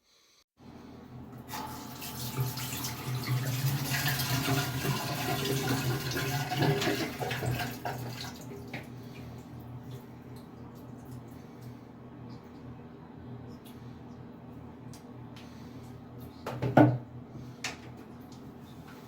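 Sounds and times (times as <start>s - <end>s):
tap water running into sink: 1.5s - 8.9s.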